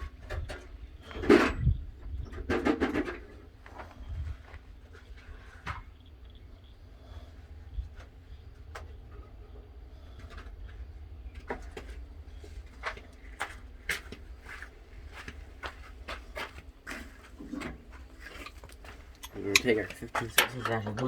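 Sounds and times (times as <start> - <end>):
metallic clicks of hand tools: 19.2 - 21.0.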